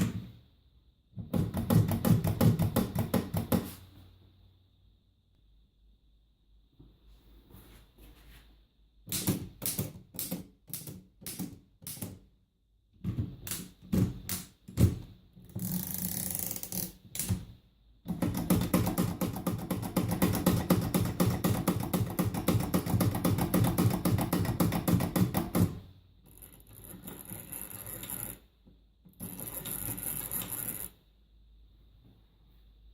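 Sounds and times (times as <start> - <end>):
typewriter typing: 18.1 - 25.7.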